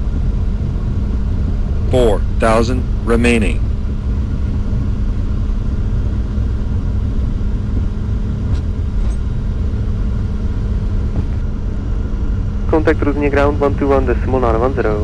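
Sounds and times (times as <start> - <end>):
aircraft cockpit rumble and hum: 0.0 - 15.0.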